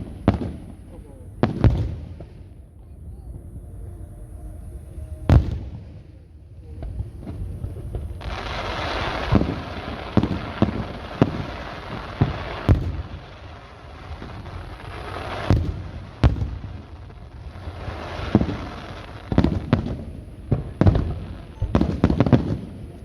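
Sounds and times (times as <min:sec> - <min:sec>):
firework booms: 0:00.0 - 0:03.5, 0:05.2 - 0:23.0
fireworks crackling and sizzling: 0:00.0 - 0:23.0.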